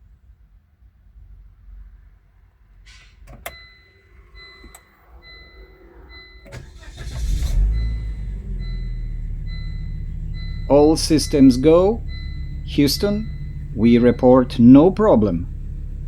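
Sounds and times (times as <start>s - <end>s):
car engine starting and idling: 2.7s - 16.0s
ignition clicks: 3.2s - 3.7s, 4.4s - 4.9s, 6.1s - 16.0s
electronic warning chime: 3.5s - 15.4s.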